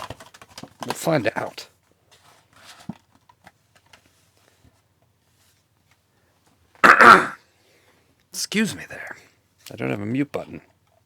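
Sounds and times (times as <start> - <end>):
man coughing: 6.8 - 7.4.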